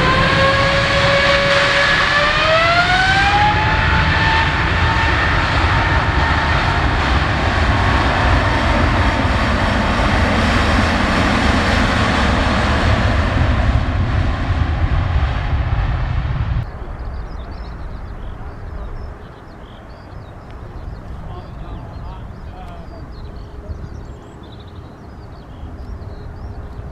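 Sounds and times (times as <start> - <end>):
jet engines roaring: 0.0 - 26.9.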